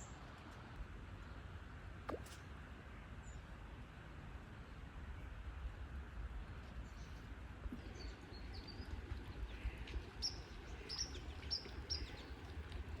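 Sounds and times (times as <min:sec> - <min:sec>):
small birds chirping: 0:07.8 - 0:12.7.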